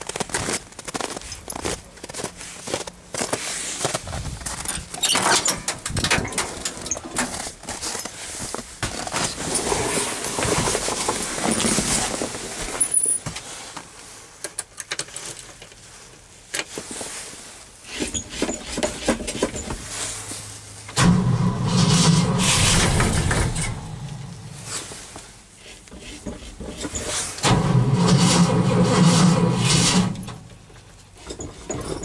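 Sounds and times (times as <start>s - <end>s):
starter cranking engine: 21.0s - 24.3s, 26.3s - 30.4s.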